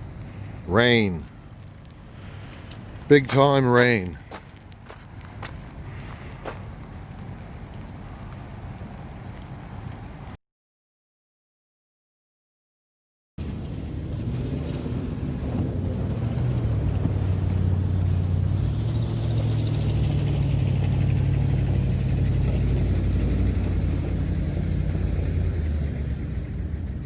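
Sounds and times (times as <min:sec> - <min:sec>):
motorboat engine running: 0:13.5 - 0:27.0.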